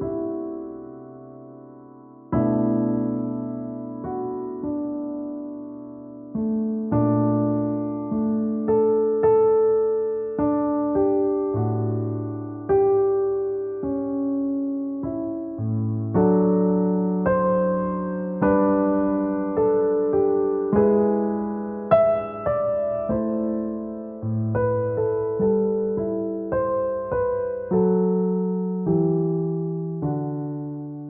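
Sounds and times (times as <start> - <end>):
slow gentle piano music: 0.0 - 31.0.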